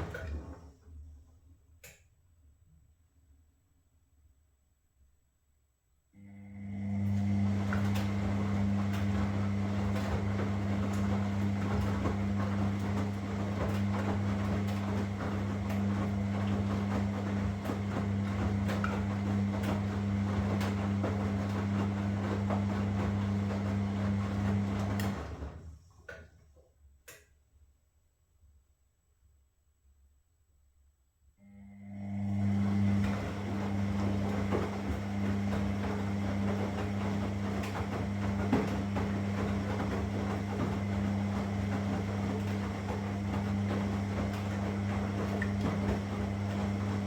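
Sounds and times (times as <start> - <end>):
washing machine churning: 0.0 - 1.3, 6.2 - 26.5, 31.6 - 47.0.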